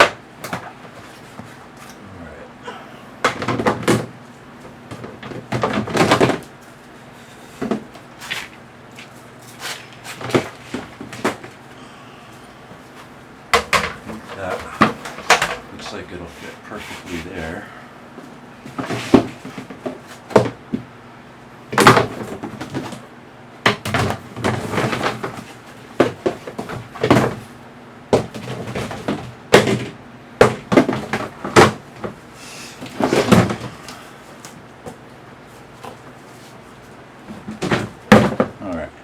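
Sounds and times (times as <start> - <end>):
plastic parts knocking and clattering: 3.2 - 6.6, 7.6 - 9.1, 10.0 - 11.6, 13.5 - 16.0, 18.7 - 20.9, 21.7 - 23.0, 23.6 - 27.5, 28.1 - 32.2, 32.8 - 35.0, 37.2 - 38.6.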